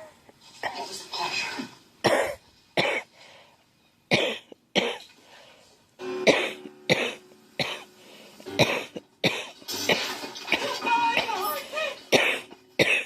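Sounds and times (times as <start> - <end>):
girl coughing: 2.1 - 3.1, 6.3 - 7.9, 8.6 - 13.0.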